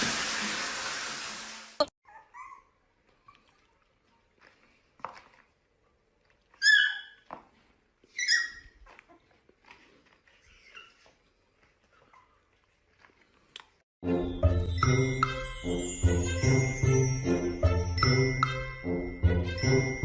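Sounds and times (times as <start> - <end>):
puppy whimpering and yelping: 2.0 - 3.4, 6.6 - 7.2, 8.1 - 9.2, 10.4 - 11.2.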